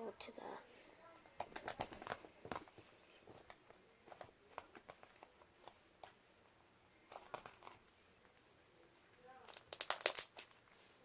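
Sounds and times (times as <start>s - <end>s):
slime squished by hand: 9.4s - 10.7s.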